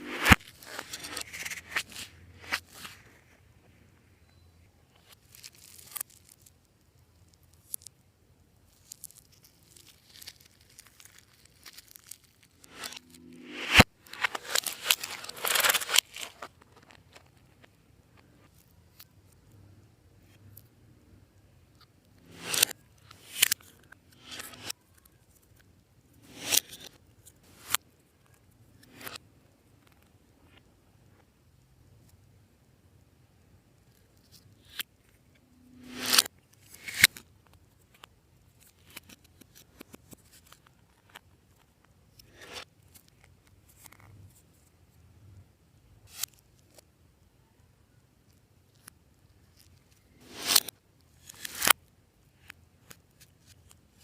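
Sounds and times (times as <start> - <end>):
crinkling and crackling: 4.9 - 8.0, 8.7 - 19.6.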